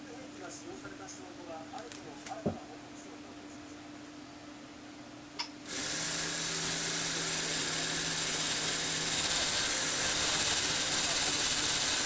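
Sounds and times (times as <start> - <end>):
toy electric motor whirring: 5.7 - 12.0.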